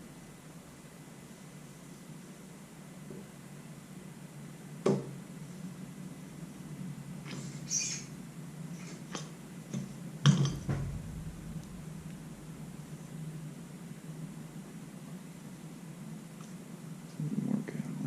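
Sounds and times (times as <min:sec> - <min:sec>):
short high squeak: 0:07.4 - 0:08.1.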